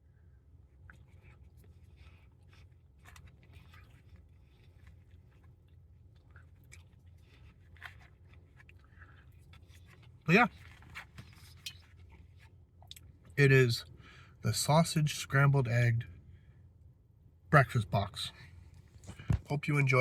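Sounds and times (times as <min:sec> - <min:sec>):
low steady hum: 0:00.0 - 0:20.0
faint chewing: 0:00.5 - 0:14.2.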